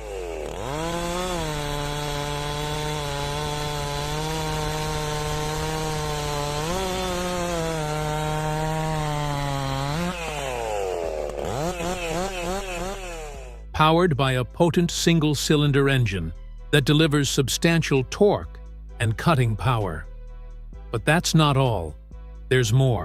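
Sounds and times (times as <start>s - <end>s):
chainsaw cutting wood: 0.0s - 13.7s.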